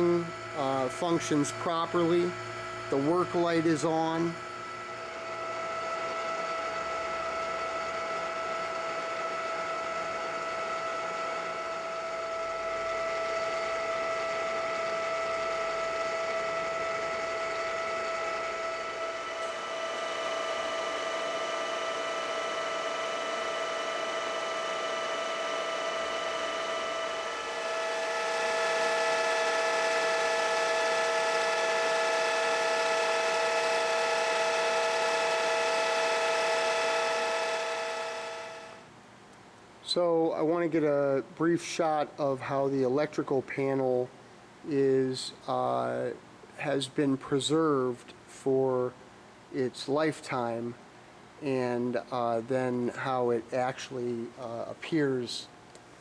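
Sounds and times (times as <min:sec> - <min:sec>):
drill press whining: 0:00.0 - 0:38.9.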